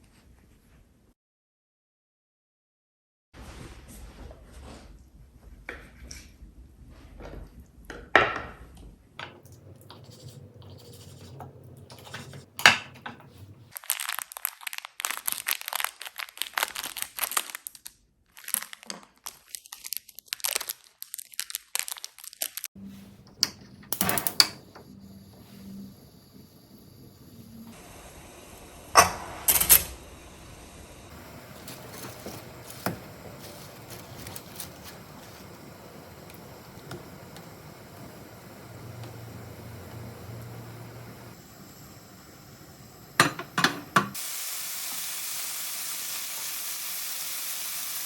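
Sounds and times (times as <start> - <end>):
crinkling and tearing rustle: 13.7 - 22.7, 31.1 - 35.6.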